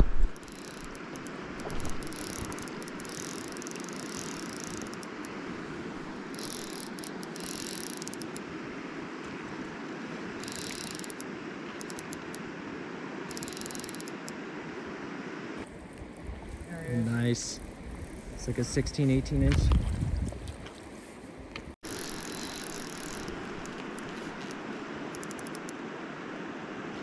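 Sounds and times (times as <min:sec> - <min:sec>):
river water rushing: 0:00.3 - 0:15.7, 0:21.9 - 0:27.0.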